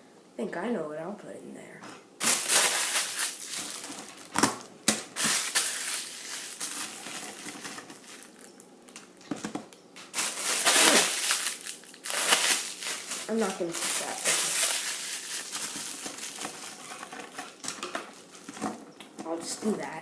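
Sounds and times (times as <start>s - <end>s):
wrapping material crumpling: 2.2s - 9.2s, 10.0s - 18.9s.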